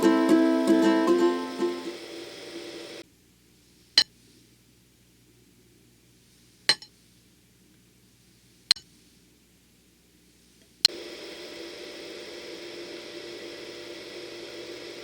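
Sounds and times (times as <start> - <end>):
ukulele music: 0.0 - 2.0.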